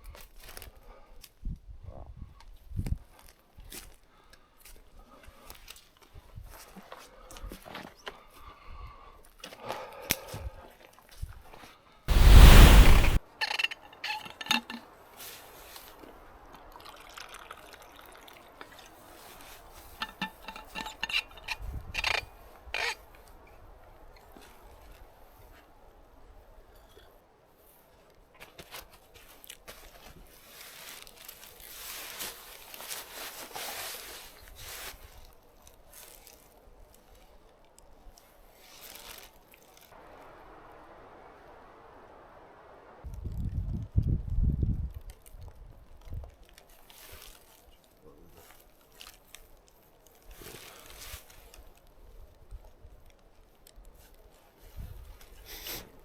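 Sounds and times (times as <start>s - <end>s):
low thumps on microphone: 12.1s - 13.2s
light rustling and crunching: 28.4s - 40.0s, 44.9s - 55.5s.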